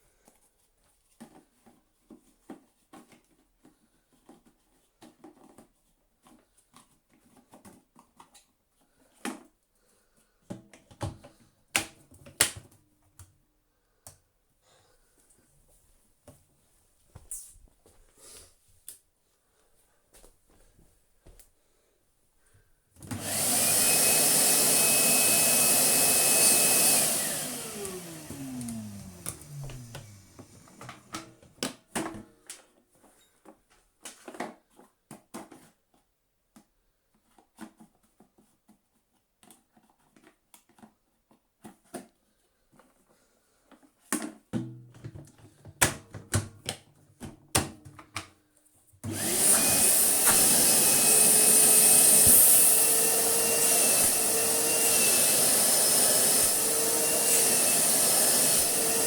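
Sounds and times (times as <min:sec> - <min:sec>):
vacuum motor running: 0:23.0 - 0:31.6, 0:49.0 - 0:59.0
motor winding down whine: 0:25.4 - 0:31.3, 0:49.1 - 0:59.0.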